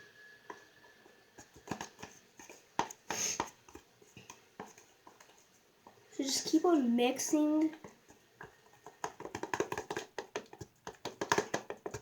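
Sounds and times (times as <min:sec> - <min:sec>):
slime squelching while stirred: 0:00.6 - 0:12.0.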